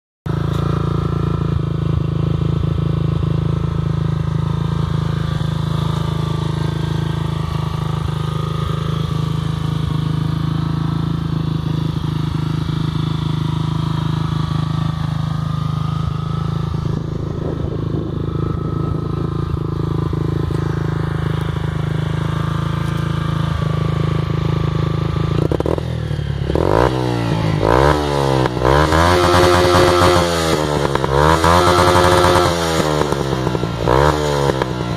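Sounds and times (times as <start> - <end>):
motorcycle engine idling: 0.3 - 34.9
motorcycle engine revving: 0.3 - 34.9.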